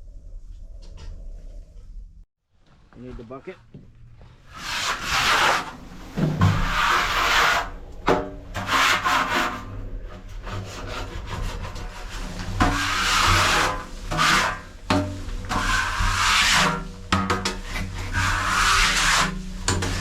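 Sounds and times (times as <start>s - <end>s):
knife scraping sludge in tank: 4.6s - 20.0s.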